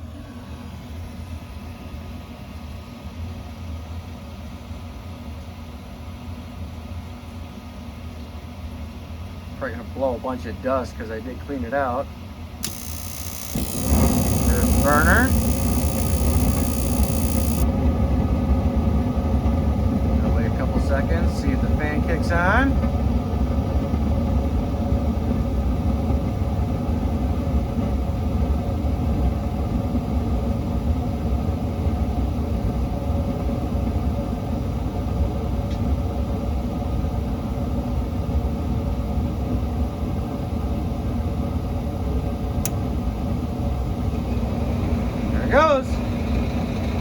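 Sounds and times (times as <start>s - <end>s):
gas heater burner rumble: 12.6s - 28.2s.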